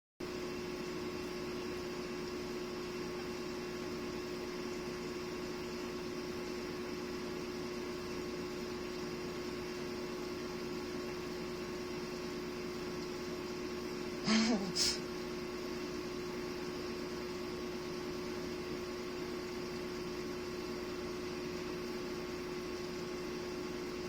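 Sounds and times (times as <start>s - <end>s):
room hum drone: 0.2s - 24.0s
even hiss: 14.2s - 15.0s.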